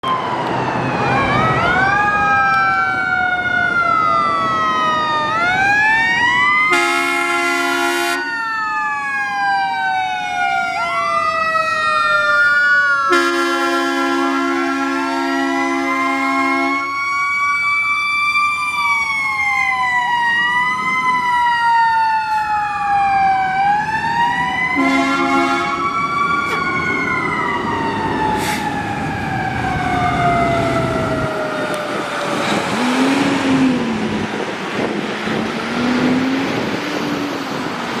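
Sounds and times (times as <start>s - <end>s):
mechanical siren wailing: 0.0s - 37.4s
rising and falling siren tones: 0.0s - 38.0s
air horn blasts: 6.7s - 8.3s, 13.1s - 17.0s, 24.8s - 26.0s
rushing noise: 25.8s - 38.0s.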